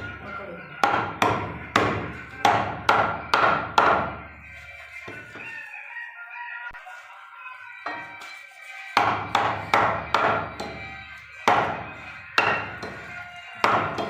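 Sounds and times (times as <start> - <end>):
blade chopping meat: 9.0 - 14.0.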